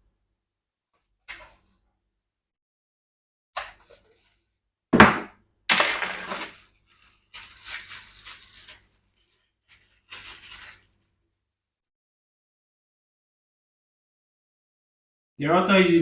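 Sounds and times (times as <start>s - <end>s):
object set down with a knock: 5.0s - 6.5s
rustling and scraping: 6.0s - 11.2s.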